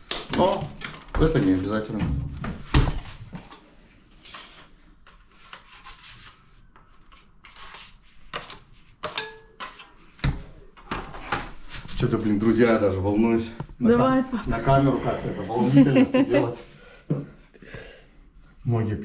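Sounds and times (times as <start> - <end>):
plastering tool scraping wet plaster: 4.1 - 10.0.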